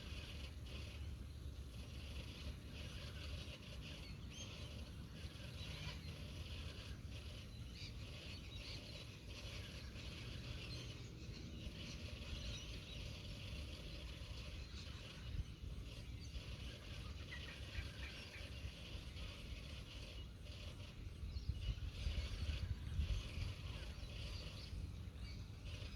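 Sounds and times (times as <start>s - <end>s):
small birds chirping: 0.0s - 25.9s
wind rumbling on microphone: 8.0s - 25.9s.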